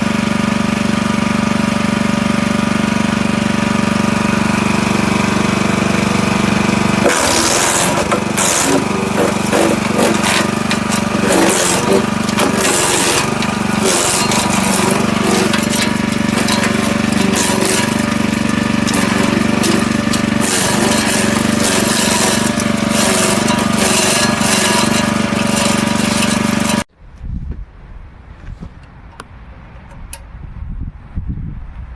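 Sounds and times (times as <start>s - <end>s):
petrol engine running: 0.0s - 26.9s
wood cracking and snapping: 7.1s - 26.8s.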